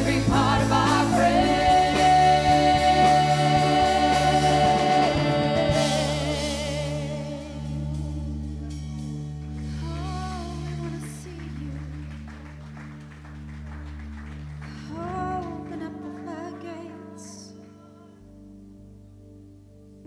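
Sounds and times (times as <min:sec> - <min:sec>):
person singing long notes: 0:00.0 - 0:11.8
sustained keyboard chords: 0:00.0 - 0:20.0.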